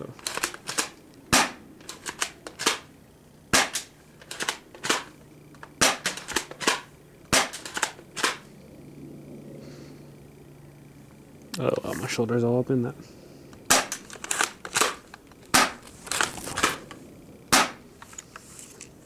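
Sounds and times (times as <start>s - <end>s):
airsoft shotgun shots: 0.4s - 2.9s, 3.5s - 5.1s, 5.8s - 8.4s, 13.7s - 14.0s, 14.8s - 15.8s, 17.5s - 17.9s.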